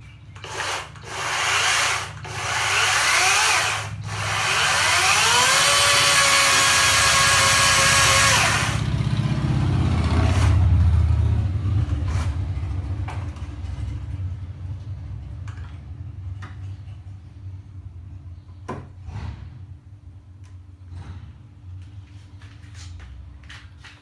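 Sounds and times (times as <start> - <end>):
chainsaw engine revving: 0.4 - 10.7.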